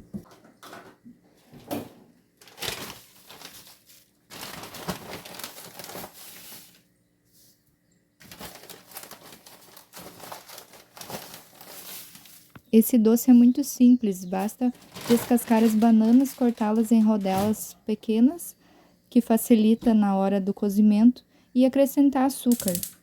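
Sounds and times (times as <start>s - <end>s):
crinkling and rustling: 0.1s - 6.9s, 8.2s - 12.8s, 14.4s - 17.8s.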